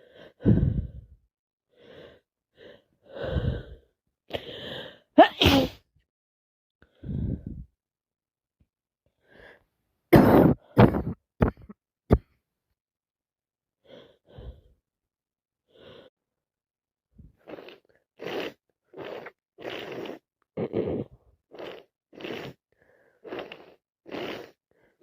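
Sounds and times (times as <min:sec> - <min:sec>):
woman coughing harshly: 0:05.2 - 0:05.8.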